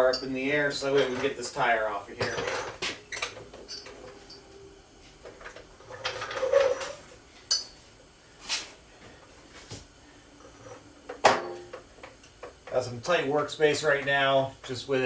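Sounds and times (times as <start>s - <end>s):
metal tools clanking: 0.0s - 4.4s.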